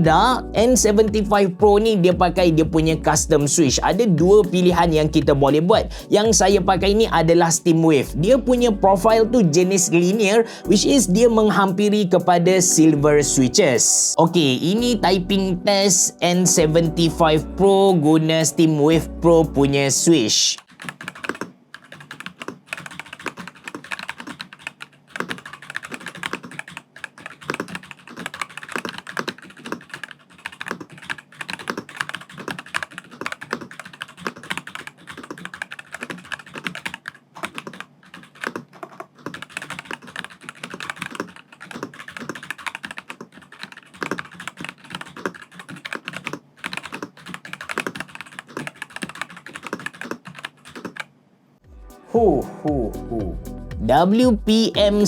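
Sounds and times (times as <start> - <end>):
mechanical keyboard typing clacks: 0.1 - 8.1, 11.4 - 12.9, 19.7 - 51.1.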